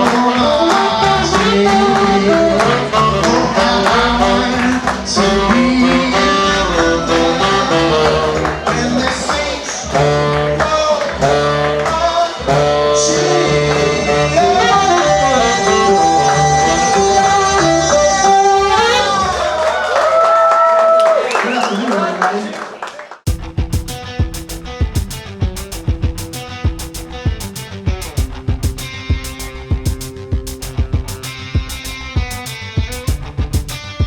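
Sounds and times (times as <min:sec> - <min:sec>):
upbeat jazz band music: 0:00.0 - 0:19.6, 0:23.3 - 0:34.0.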